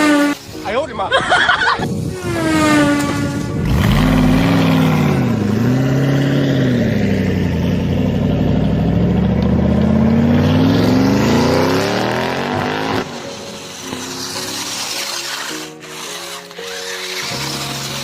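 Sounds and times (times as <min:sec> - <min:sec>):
engine revving: 0:02.1 - 0:14.9.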